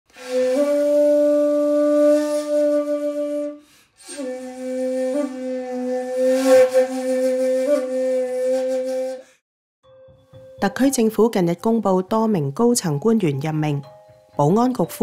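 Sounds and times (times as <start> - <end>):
music with long held notes: 0.1 - 9.2.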